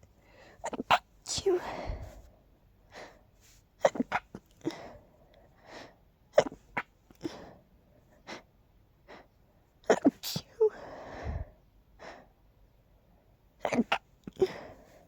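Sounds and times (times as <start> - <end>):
soft breaths: 0.0 - 3.8, 4.4 - 6.1, 7.1 - 13.4, 14.2 - 15.0
person sneezing: 0.6 - 2.2, 9.9 - 10.7.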